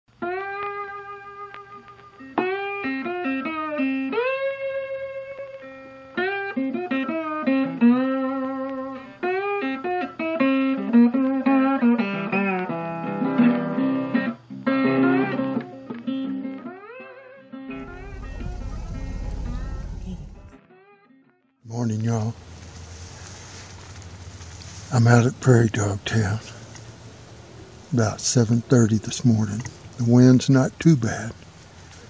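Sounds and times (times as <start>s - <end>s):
bluesy solo guitar: 0.1s - 20.8s.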